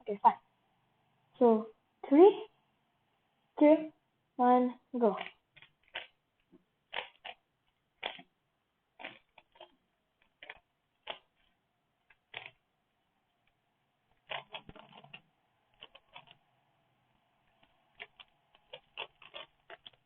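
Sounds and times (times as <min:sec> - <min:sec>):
puzzle cube plastic clicks: 0:05.2 - 0:07.4, 0:08.0 - 0:08.3, 0:09.0 - 0:12.6, 0:14.1 - 0:16.4, 0:17.5 - 0:20.0.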